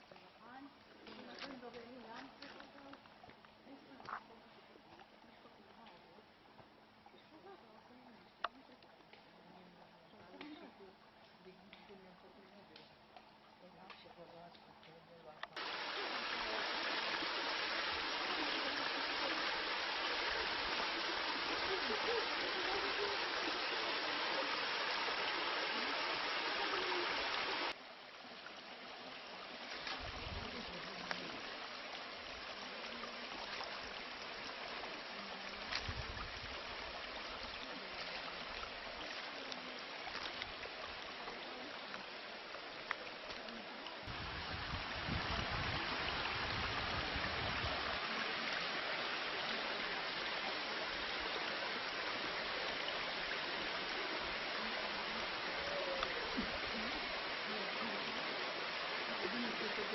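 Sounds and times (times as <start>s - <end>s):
stream water rushing: 15.5s - 59.9s.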